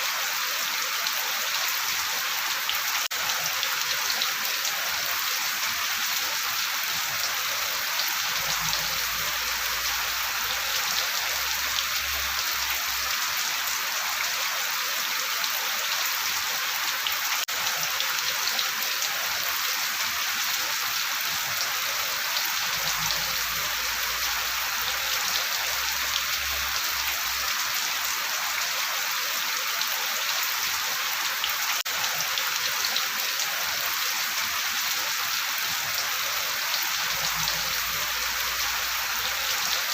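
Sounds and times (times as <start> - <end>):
dense rainfall: 0.0 - 39.9.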